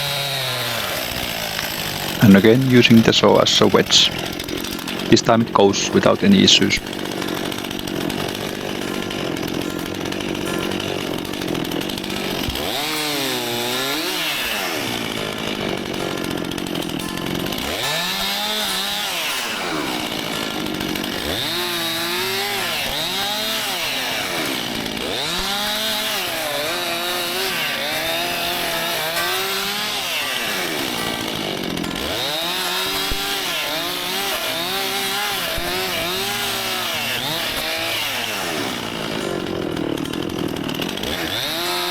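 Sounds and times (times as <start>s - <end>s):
chainsaw revving: 0.0s - 41.9s.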